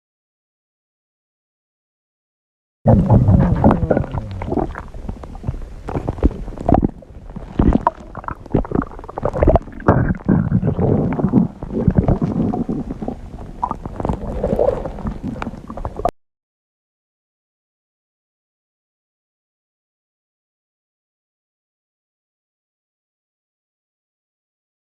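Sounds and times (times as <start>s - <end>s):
stomach growling and gurgling: 2.9s - 16.1s.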